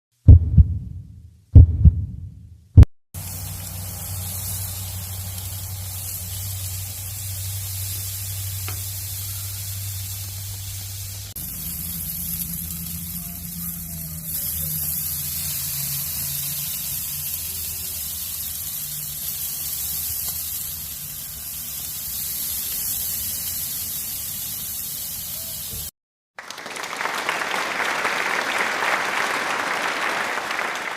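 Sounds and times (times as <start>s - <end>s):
low hum: 0.3s - 2.5s
steaks sizzling in a pan: 3.2s - 25.8s.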